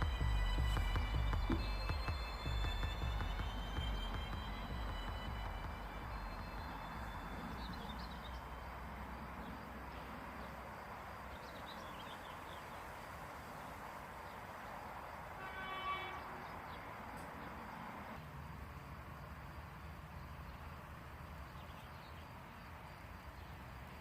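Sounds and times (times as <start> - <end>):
steady outdoor hiss: 0.0 - 24.0
faint bird chirps: 5.5 - 10.6
horn-like call: 15.4 - 16.6.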